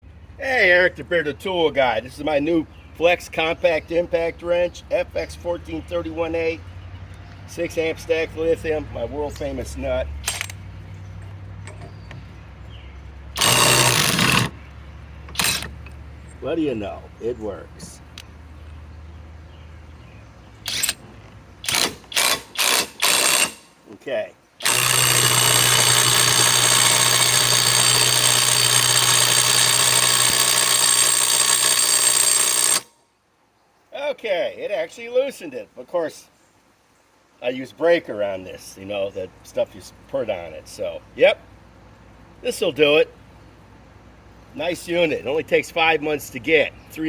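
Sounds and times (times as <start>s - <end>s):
impact wrench hammering: 13.4s - 14.6s, 21.6s - 23.7s, 24.6s - 32.9s.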